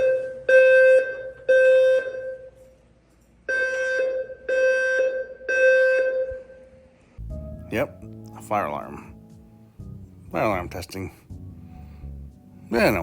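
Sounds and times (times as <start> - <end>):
fire alarm beeps: 0.0 - 2.7, 3.5 - 6.6.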